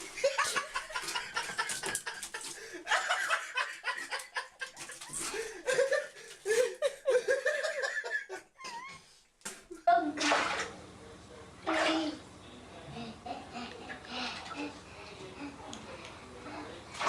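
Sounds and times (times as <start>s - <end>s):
people laughing: 0.0s - 9.1s, 12.6s - 17.0s.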